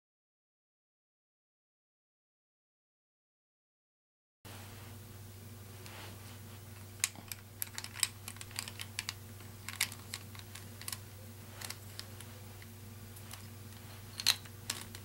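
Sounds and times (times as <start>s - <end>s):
low hum: 4.5s - 15.0s
plastic puzzle pieces clicking: 7.0s - 11.0s, 14.2s - 15.0s.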